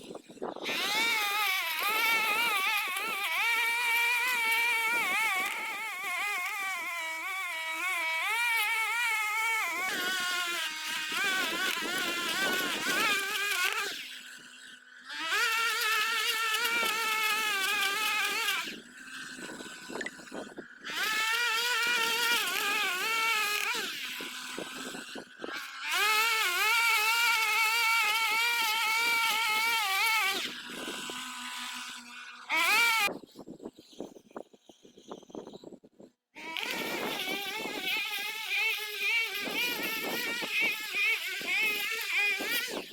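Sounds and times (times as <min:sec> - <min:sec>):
line trimmer engine revving: 0:00.6 - 0:33.1, 0:36.4 - 0:42.9.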